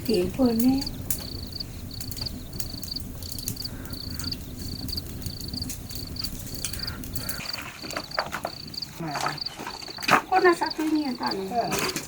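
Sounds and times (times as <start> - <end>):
steady low rumble: 0.0 - 9.0
insect chirping: 0.1 - 12.0.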